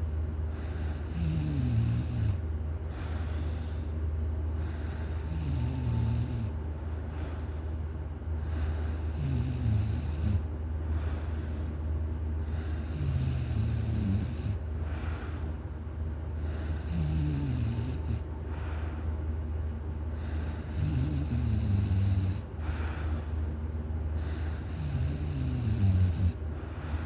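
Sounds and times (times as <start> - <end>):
person snoring: 1.1 - 2.4, 5.2 - 6.6, 9.1 - 10.4, 12.7 - 14.6, 16.8 - 18.2, 20.6 - 22.4, 24.6 - 26.4.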